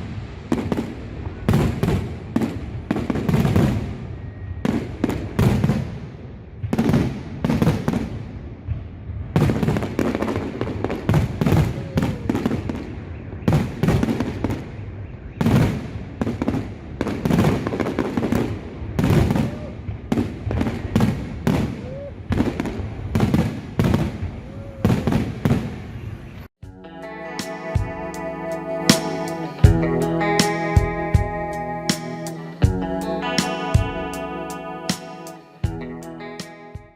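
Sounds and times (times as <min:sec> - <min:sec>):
fireworks bursting: 0:00.0 - 0:26.2.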